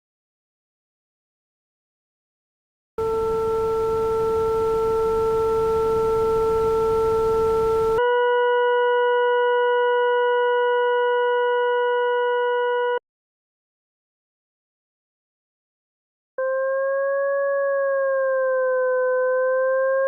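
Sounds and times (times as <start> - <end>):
steady electronic tone: 3.0 - 8.0.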